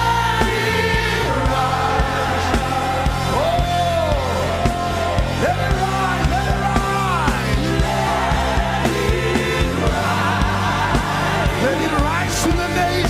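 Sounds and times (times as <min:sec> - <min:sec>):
bass guitar: 0:00.0 - 0:13.0
drum beat: 0:00.0 - 0:13.0.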